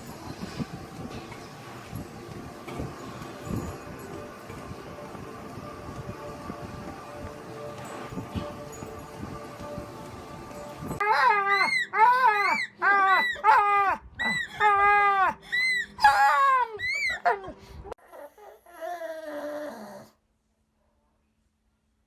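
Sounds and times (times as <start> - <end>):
dog whining and yowling: 11.0 - 20.1.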